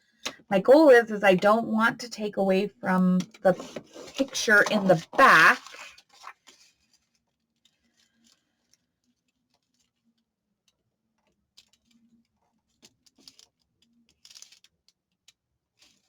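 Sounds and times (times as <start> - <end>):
paper rustling: 3.3 - 8.4.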